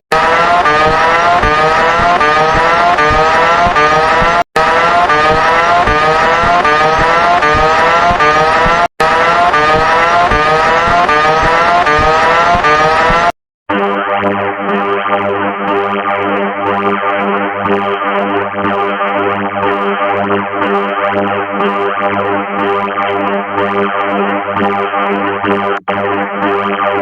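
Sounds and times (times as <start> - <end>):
distorted electronic alarm sweeps: 0.1 - 13.4
synthesizer music: 0.1 - 14.8.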